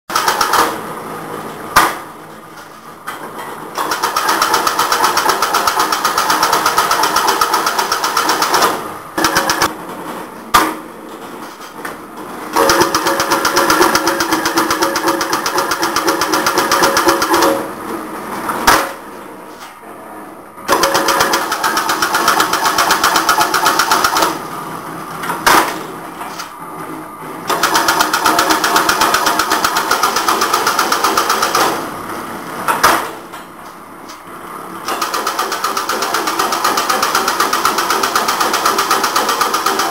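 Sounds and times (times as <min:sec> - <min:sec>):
sharp machine clack: 0:00.1 - 0:00.8, 0:03.8 - 0:09.8, 0:12.5 - 0:17.7, 0:20.7 - 0:24.5, 0:27.5 - 0:31.9, 0:34.8 - 0:39.9.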